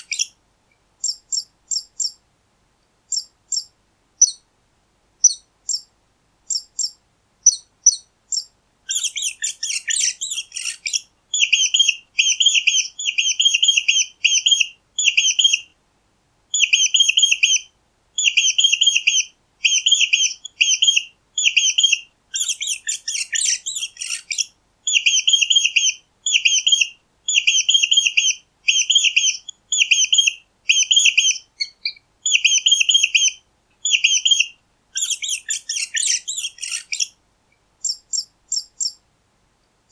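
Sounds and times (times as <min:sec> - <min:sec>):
mice squeaking: 0:06.5 - 0:15.6, 0:18.2 - 0:37.1, 0:37.8 - 0:39.0.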